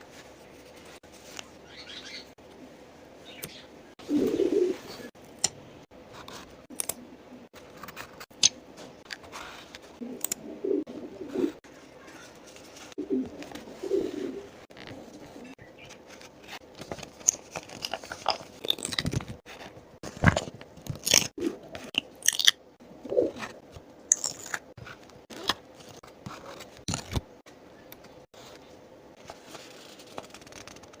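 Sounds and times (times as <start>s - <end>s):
pigeon cooing: 4.0s - 5.1s, 10.0s - 12.4s, 13.0s - 15.6s
paper crinkling and clicking: 14.7s - 22.0s, 29.2s - 31.0s.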